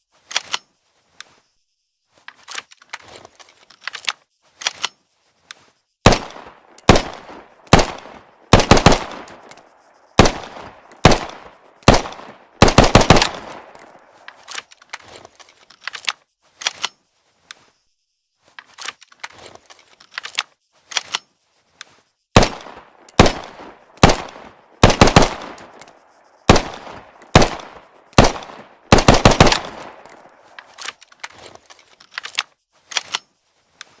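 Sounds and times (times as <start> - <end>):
pistol gunshots: 6.0 - 9.4, 10.2 - 13.8, 22.4 - 25.8, 26.4 - 30.2.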